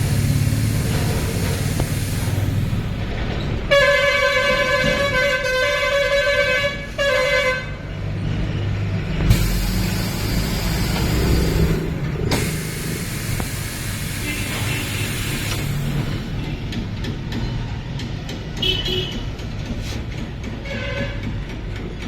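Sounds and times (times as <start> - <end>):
broad hiss: 0.0 - 3.0, 9.3 - 16.3
low engine rumble: 0.0 - 18.5
vehicle horn: 3.7 - 7.9, 14.2 - 16.0, 18.6 - 19.2.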